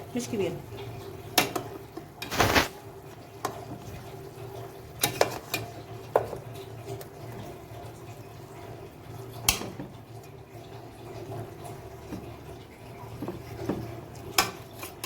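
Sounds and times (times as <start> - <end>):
chicken cooking: 2.3 - 2.7.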